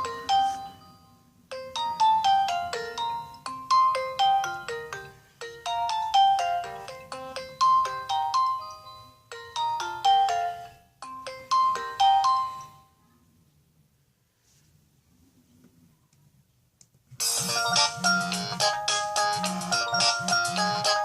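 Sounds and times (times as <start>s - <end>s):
phone ringtone melody: 0.0s - 12.9s, 17.2s - 21.0s.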